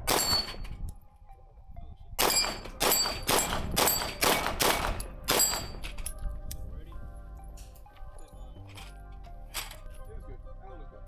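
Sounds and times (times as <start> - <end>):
rapid pistol shots: 0.0 - 0.6, 2.2 - 5.8.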